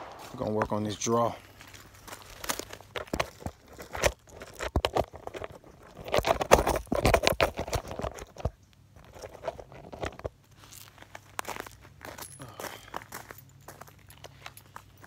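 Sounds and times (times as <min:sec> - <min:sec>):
handling rustling and knocks: 0:01.7 - 0:11.4.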